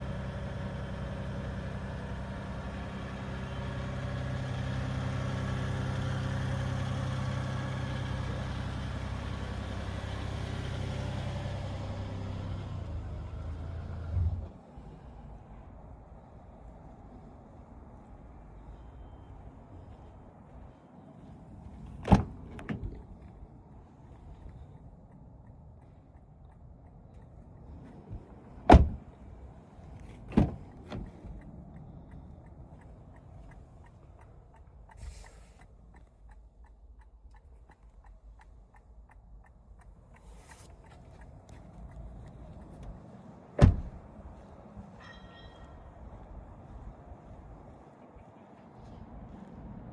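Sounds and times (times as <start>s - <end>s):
car doors shutting: 21.9s - 23.0s, 28.7s - 29.0s, 30.1s - 31.4s, 43.6s - 44.0s
light even ticking: 23.6s - 27.8s, 30.6s - 43.1s.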